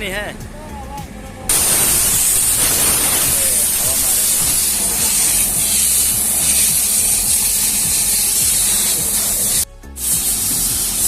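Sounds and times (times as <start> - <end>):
low hum: 1.3 - 7.8
compressed air hissing: 1.5 - 11.0.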